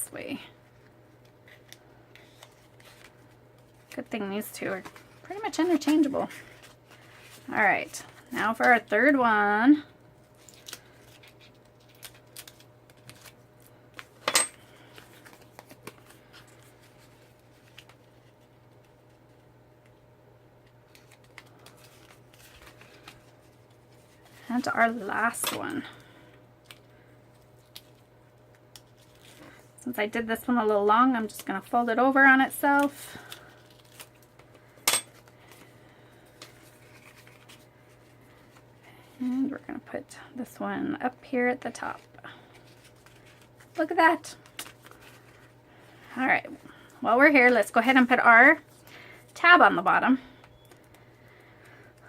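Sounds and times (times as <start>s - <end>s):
paper rustling: 1.4s - 8.3s, 10.4s - 19.4s, 20.9s - 24.7s, 35.2s - 38.7s, 44.4s - 45.5s.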